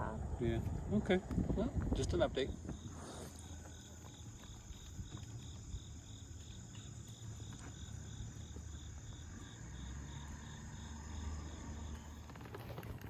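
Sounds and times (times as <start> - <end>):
insect chirping: 0.0 - 13.0.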